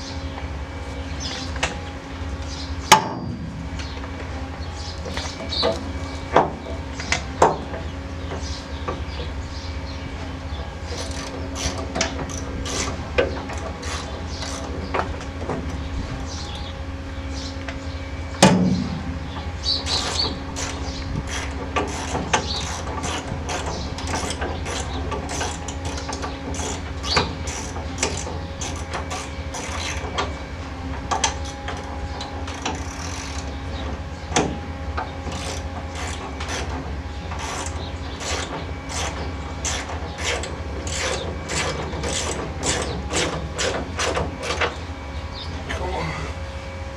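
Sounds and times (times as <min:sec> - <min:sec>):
steady low hum: 0:00.0 - 0:46.9.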